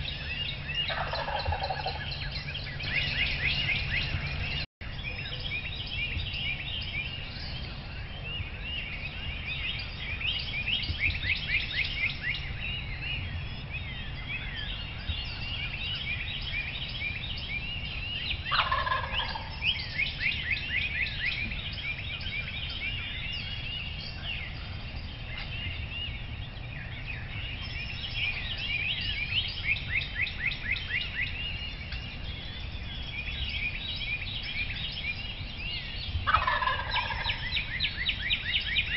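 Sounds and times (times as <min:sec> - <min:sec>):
songbirds chirping: 0:00.0 - 0:38.9
turkey gobbling: 0:00.8 - 0:02.1, 0:18.5 - 0:19.7, 0:36.2 - 0:37.7.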